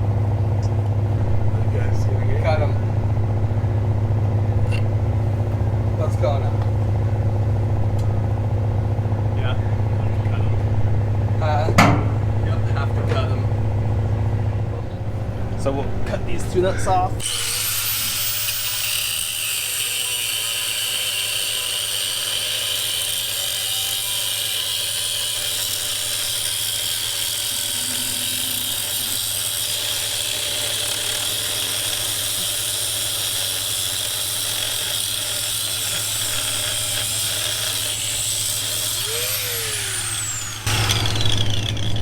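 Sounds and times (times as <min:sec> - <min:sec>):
angle grinder cutting steel: 0:04.7 - 0:04.9, 0:16.3 - 0:42.0.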